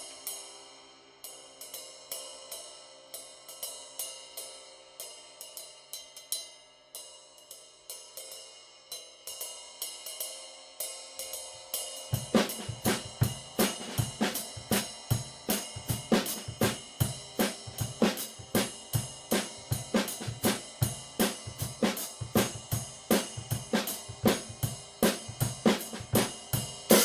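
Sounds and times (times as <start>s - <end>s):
drum kit playing: 12.1s - 27.0s.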